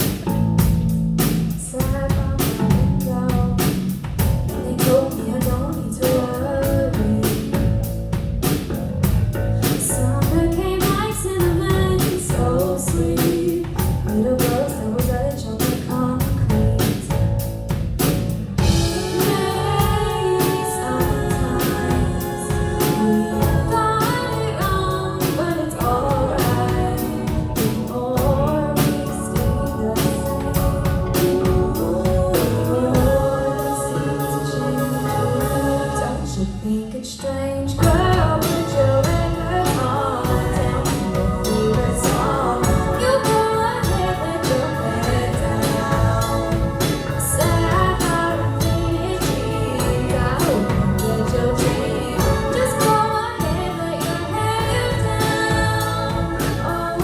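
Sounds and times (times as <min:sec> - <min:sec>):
drum kit beat: 0:00.0 - 0:36.0, 0:37.8 - 0:57.0
live band playing: 0:00.0 - 0:36.8, 0:37.8 - 0:57.0
person singing: 0:18.6 - 0:57.0.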